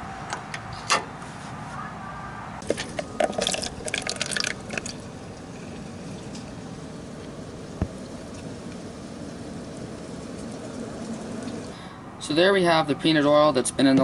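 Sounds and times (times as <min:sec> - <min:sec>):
oil draining into a container: 0:02.6 - 0:06.5.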